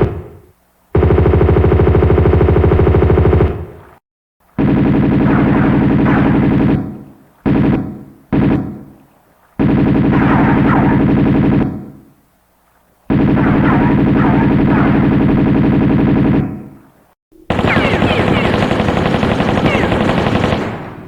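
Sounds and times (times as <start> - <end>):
automatic gunfire bursts: 17.5 - 21.0.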